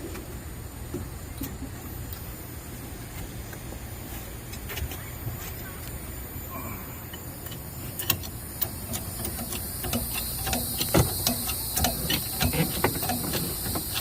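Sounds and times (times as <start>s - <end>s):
metallic hardware clicks: 7.1s - 14.0s.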